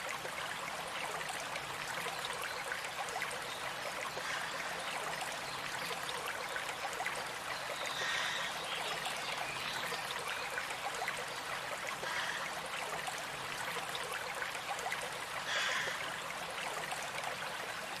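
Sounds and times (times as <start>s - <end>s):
stream water trickling: 0.0s - 18.0s.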